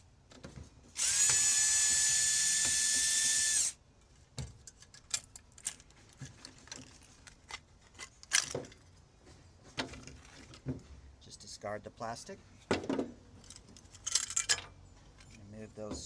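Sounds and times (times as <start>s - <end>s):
power drill whining: 1.0s - 3.8s
small metal parts clinking: 4.6s - 8.9s, 13.4s - 15.4s.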